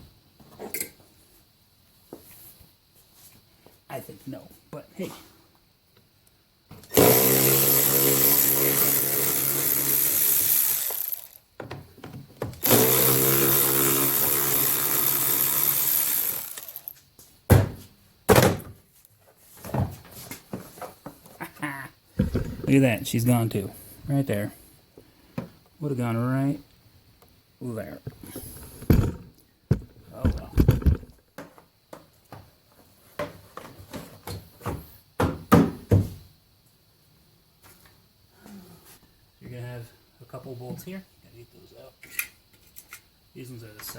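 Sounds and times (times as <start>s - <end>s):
cordless drill motor running: 6.9s - 11.4s, 12.6s - 16.9s
sharp thunks: 17.5s - 18.8s, 22.2s - 22.8s.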